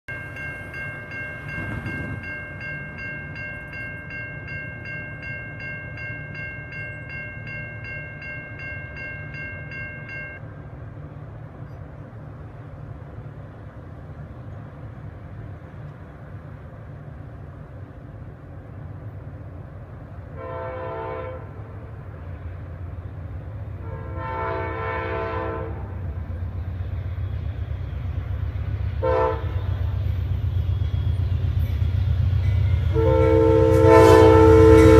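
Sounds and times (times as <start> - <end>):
train bell ringing: 0.1 - 10.4, 26.3 - 34.9
locomotive engine rumble: 0.1 - 34.9
train air horn blasts: 20.4 - 21.7, 23.8 - 26.0, 29.0 - 29.9, 32.8 - 34.9.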